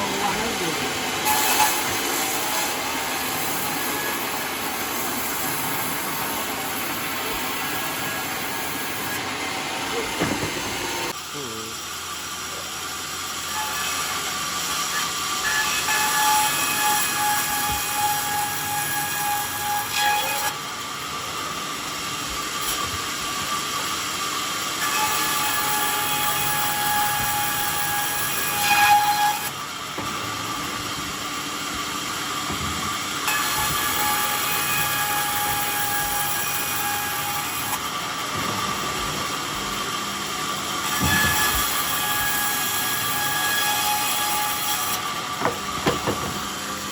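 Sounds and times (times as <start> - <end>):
saw cutting wood: 0.0 - 46.9
sawmill machine running: 0.0 - 46.9.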